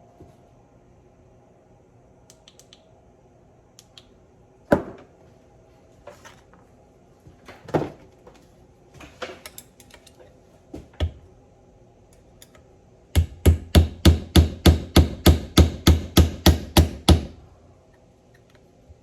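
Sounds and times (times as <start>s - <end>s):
loud knocks on bench: 4.7s - 5.1s.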